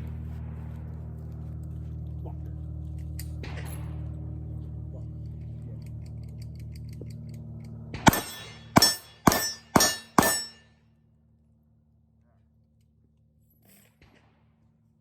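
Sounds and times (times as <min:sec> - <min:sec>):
gunshots with ringing tail: 0:07.9 - 0:10.6.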